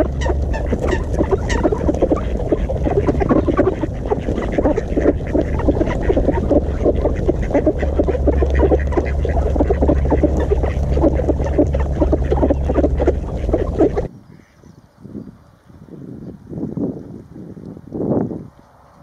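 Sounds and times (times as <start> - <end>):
low steady rumble: 0.0 - 14.1
ducks quacking: 0.0 - 14.6.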